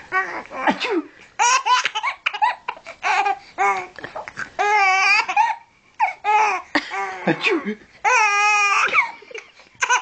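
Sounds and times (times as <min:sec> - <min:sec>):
baby laughing and squealing: 0:01.4 - 0:03.8, 0:04.6 - 0:09.2, 0:09.8 - 0:10.0.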